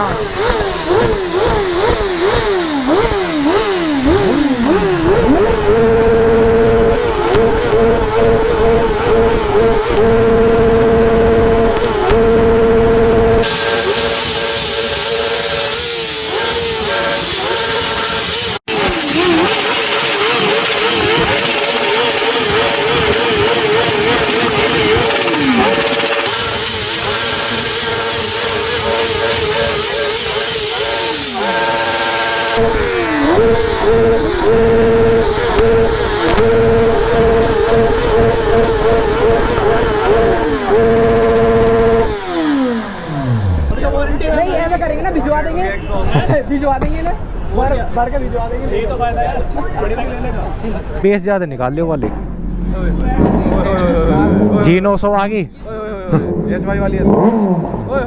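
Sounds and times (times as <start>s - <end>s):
motorcycle engine revving: 0.0s - 44.9s, 56.5s - 58.0s.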